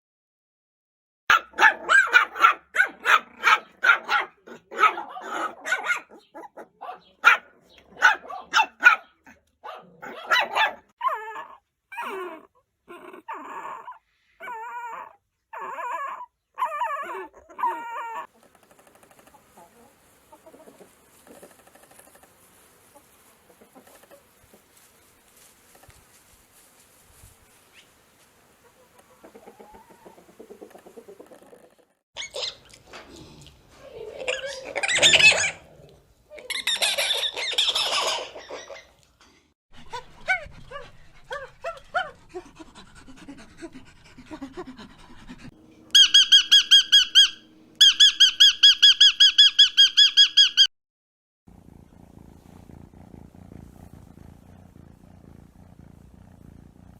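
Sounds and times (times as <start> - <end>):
dog barking: 1.3 - 10.9.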